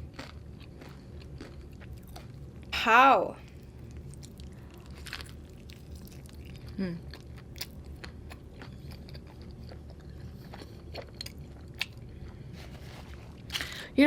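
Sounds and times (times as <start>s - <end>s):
chewing food: 0.0s - 2.7s, 3.4s - 13.7s
person humming: 6.8s - 7.1s.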